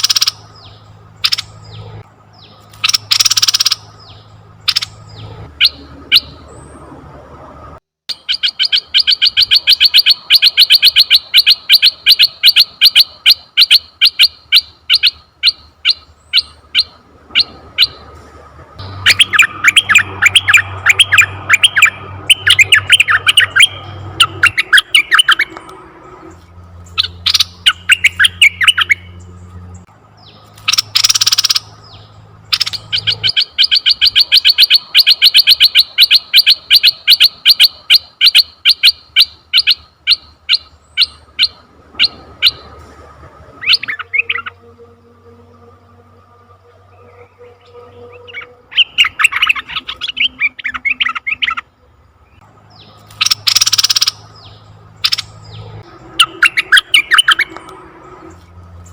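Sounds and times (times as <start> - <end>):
bird calling and chirping: 0.0 - 7.0, 8.1 - 42.9, 43.5 - 44.7, 46.8 - 58.9.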